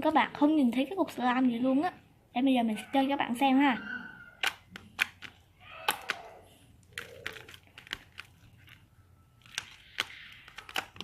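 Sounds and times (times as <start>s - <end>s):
slime squelching: 2.9s - 11.0s.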